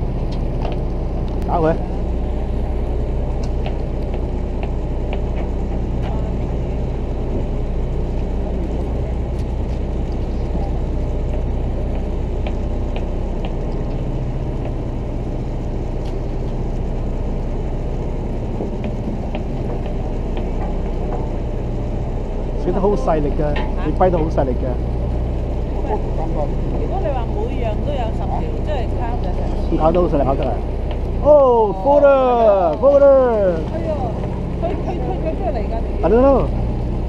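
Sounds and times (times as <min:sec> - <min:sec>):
boat engine rumbling: 0:00.0 - 0:37.0.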